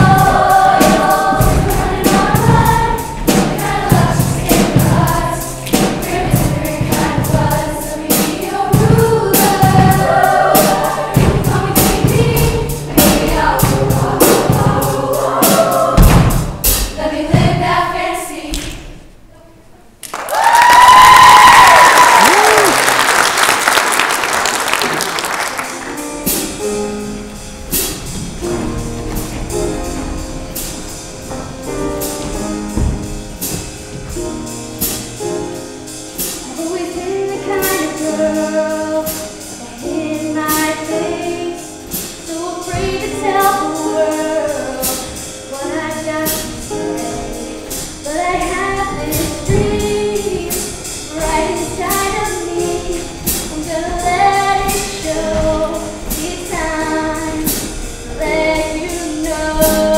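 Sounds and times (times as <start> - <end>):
music with steady beat: 0.0 - 17.9, 25.2 - 59.9
choir singing: 0.0 - 19.0, 36.4 - 59.9
audience cheering and applause: 20.0 - 25.9.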